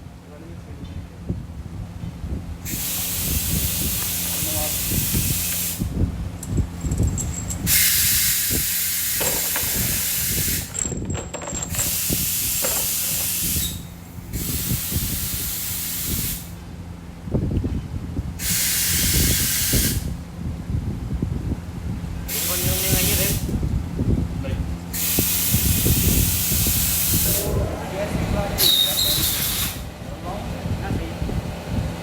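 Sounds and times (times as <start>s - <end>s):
steady hum: 1.3s - 15.5s, 23.4s - 28.6s
air gun hissing in bursts: 2.6s - 16.6s, 18.4s - 20.2s, 22.2s - 23.6s, 24.9s - 27.6s, 28.6s - 29.9s
low rumble: 3.6s - 7.7s.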